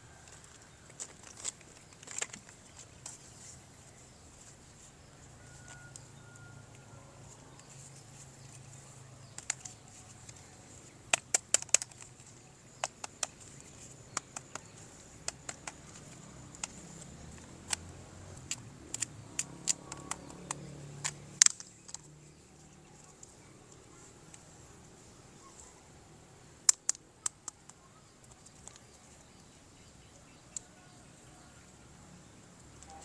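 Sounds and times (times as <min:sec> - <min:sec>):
plastic toys clicking and tapping: 0:00.2 - 0:03.2, 0:09.2 - 0:10.4, 0:11.1 - 0:22.1, 0:26.7 - 0:28.9.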